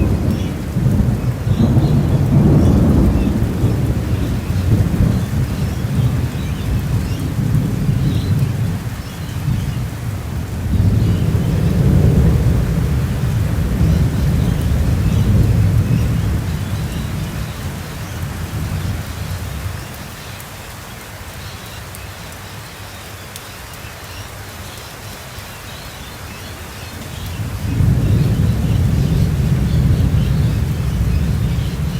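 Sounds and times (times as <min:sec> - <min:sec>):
thunder rolling: 0:00.0 - 0:19.6, 0:27.3 - 0:31.9
steady rain: 0:00.0 - 0:31.9.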